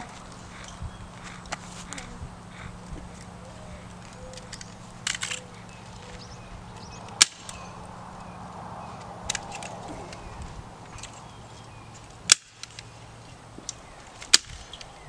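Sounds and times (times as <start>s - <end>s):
sharp clacks: 9.0s - 12.9s.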